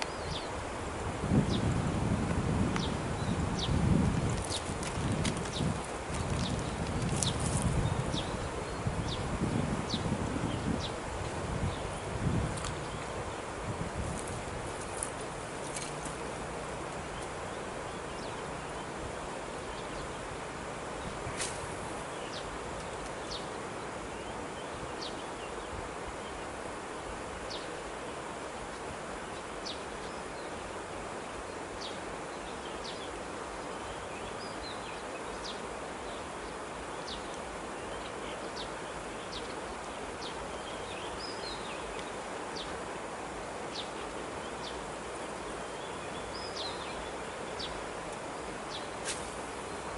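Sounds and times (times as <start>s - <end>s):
small birds chirping: 0.0s - 0.6s, 2.7s - 13.5s, 29.2s - 42.8s, 43.7s - 49.9s
steady outdoor hiss: 0.0s - 49.9s.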